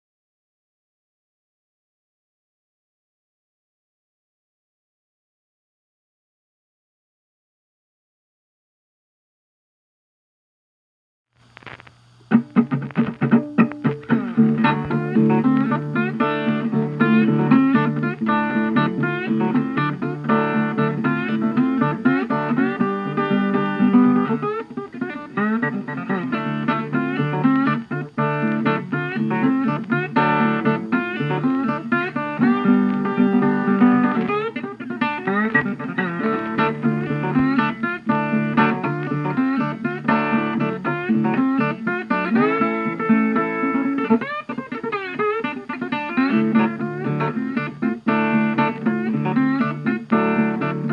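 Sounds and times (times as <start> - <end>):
instrumental guitar music: 11.4 - 50.9
slide guitar: 11.5 - 50.9.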